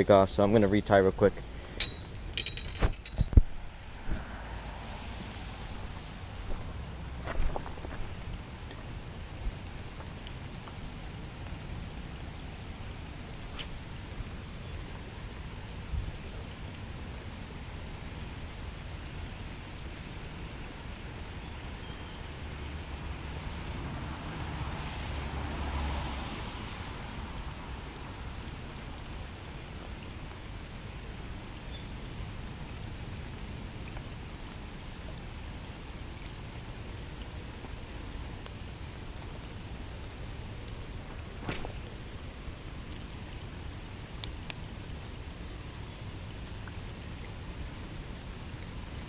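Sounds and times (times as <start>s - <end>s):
heavy rain falling: 1.4s - 49.0s
rushing swell with low rumble: 3.5s - 7.2s.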